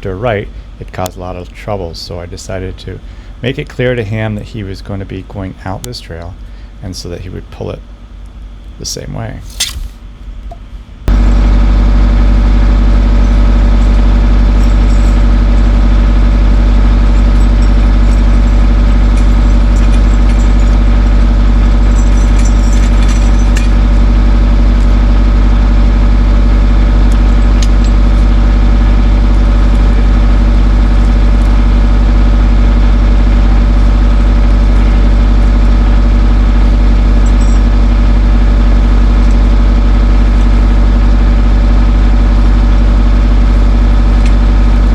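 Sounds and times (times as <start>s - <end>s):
skid steer engine running: 11.1s - 44.9s.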